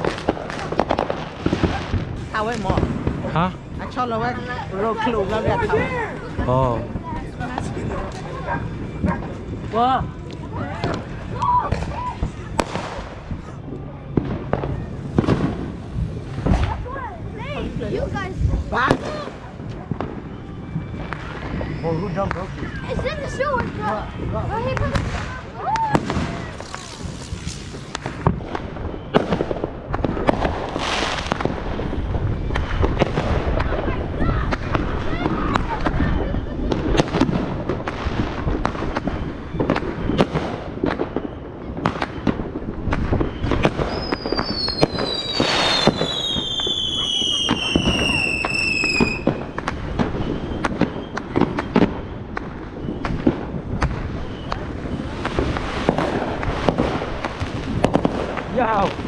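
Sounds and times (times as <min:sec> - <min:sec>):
fireworks bangs and pops: 0:00.0 - 0:59.0
fireworks hissing burst: 0:21.0 - 0:32.1.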